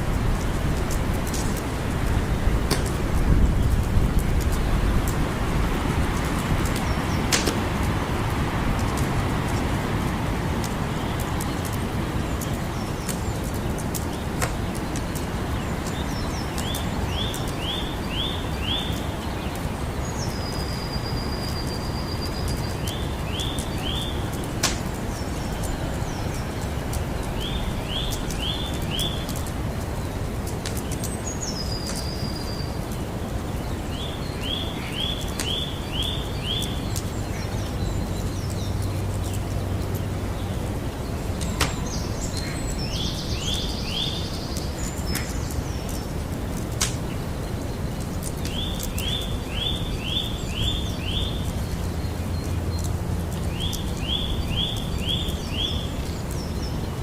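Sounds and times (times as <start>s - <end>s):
campfire crackling and popping: 0.0s - 57.0s
bird chirping: 11.0s - 46.3s, 47.0s - 57.0s.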